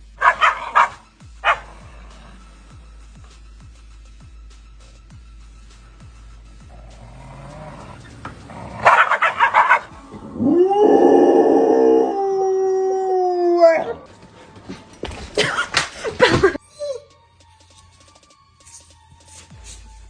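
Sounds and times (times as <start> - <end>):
dog howling: 8.8 - 14.1.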